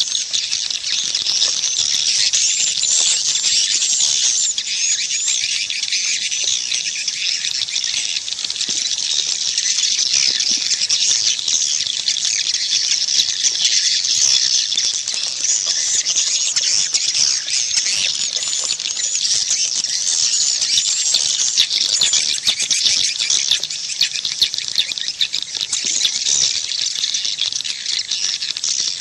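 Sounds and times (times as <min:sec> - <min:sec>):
swiftlets twittering: 0:07.1 - 0:26.9.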